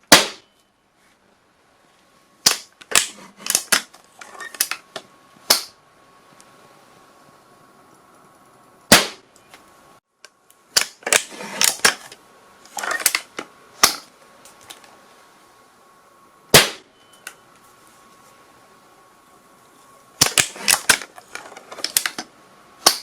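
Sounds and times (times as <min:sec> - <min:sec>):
gunshots: 0:00.1 - 0:00.5, 0:08.9 - 0:09.2, 0:16.5 - 0:16.9.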